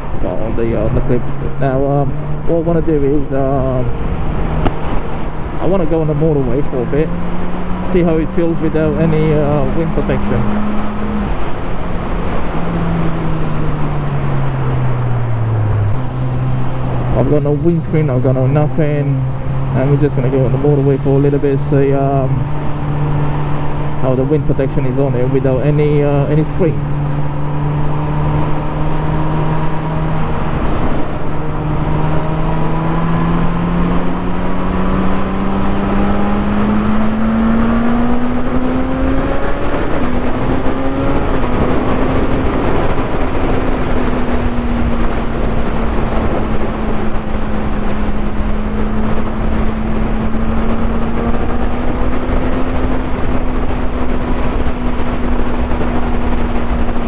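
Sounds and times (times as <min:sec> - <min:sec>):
motorcycle engine accelerating: 0:00.0 - 0:57.0
wind rush: 0:00.0 - 0:57.0.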